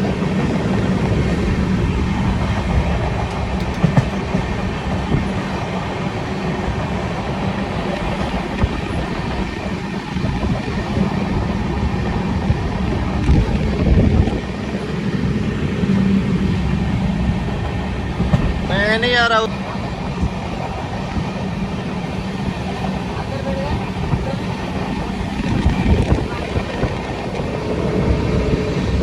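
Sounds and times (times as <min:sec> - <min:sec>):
wheels clicking over track: 0:00.0 - 0:14.8
train rumbling on rails: 0:00.0 - 0:29.0.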